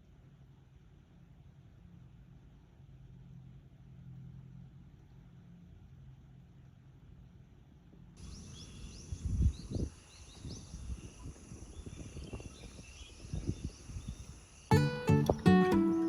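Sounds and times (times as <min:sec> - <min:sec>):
faint low hum: 0:00.0 - 0:16.0
high insect drone: 0:08.2 - 0:14.8
insect chirps: 0:08.2 - 0:16.0.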